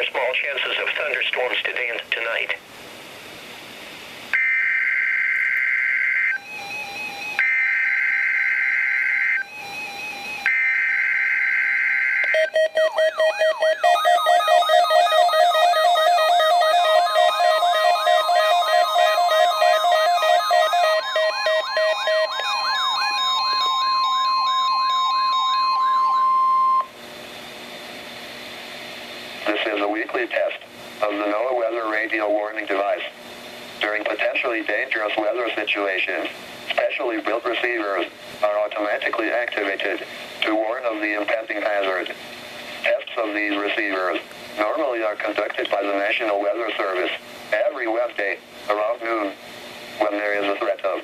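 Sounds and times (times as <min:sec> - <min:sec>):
radio static hiss: 0:00.0 - 0:04.4, 0:26.9 - 0:51.0
whooping siren sweep: 0:04.4 - 0:26.9
steady high alarm tone: 0:04.4 - 0:27.0
electronic beeping notes: 0:12.2 - 0:26.9.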